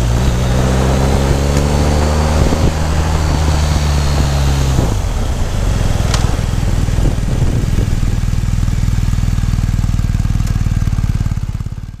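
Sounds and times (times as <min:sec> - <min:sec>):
motorcycle engine idling: 0:01.6 - 0:12.0
sharp click: 0:06.1 - 0:06.4.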